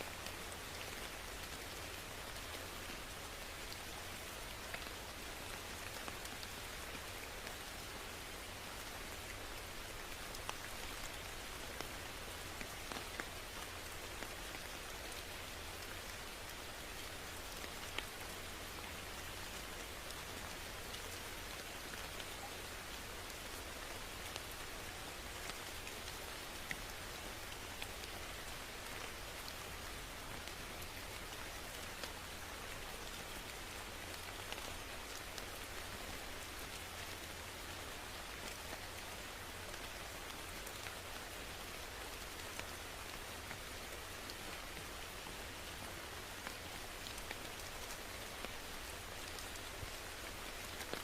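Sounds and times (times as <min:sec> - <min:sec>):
steady rain hiss: 0:00.0 - 0:51.0
raindrop ticks: 0:10.1 - 0:18.2, 0:25.4 - 0:29.6.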